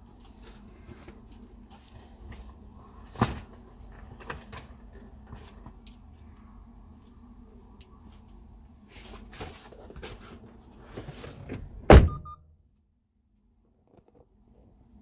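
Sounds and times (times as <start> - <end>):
rustling and handling noises: 0.0 - 11.5
door shutting with a thump: 11.4 - 12.4
short beeps: 12.0 - 12.5.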